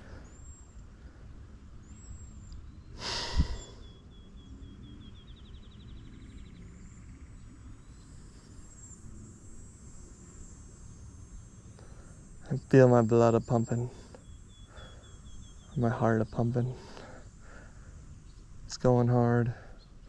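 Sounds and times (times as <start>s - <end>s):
quiet outdoor background: 0.0s - 20.0s
heavy hissing breath: 3.0s - 3.9s, 13.9s - 15.3s, 16.7s - 18.2s.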